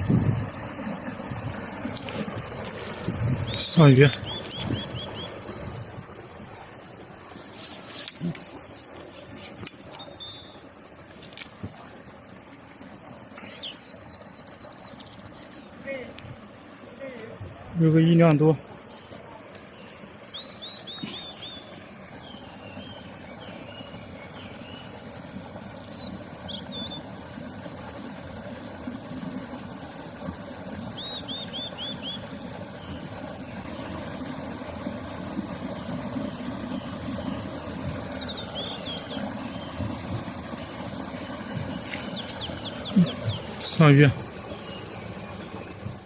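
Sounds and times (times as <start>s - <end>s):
small bird chirps: 3.5s - 5.4s, 9.2s - 10.6s, 13.4s - 15.2s, 19.8s - 21.7s.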